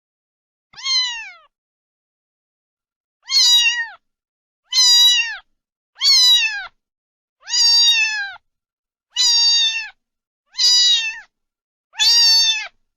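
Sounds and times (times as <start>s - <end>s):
cat meowing: 0.8s - 1.5s, 3.2s - 4.0s, 4.7s - 6.8s, 7.4s - 8.4s, 9.1s - 11.3s, 12.0s - 12.8s.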